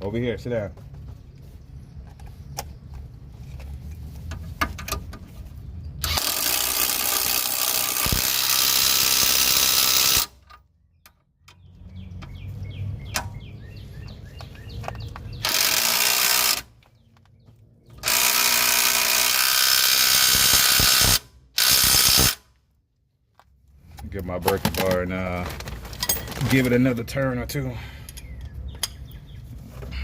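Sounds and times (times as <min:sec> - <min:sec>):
cordless power tool running: 0:06.0 - 0:10.3, 0:15.4 - 0:16.7, 0:18.0 - 0:22.4
hand ratchet clicking: 0:18.0 - 0:22.4.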